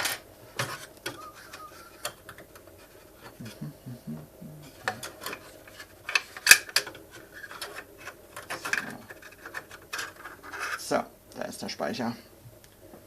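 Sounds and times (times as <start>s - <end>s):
small clicks taps and scrapes: 4.8s - 10.8s.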